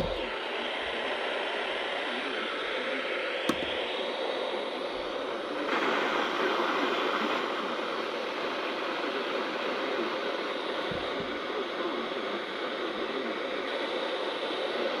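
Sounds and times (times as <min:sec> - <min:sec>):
sharp click: 0:03.5 - 0:03.8.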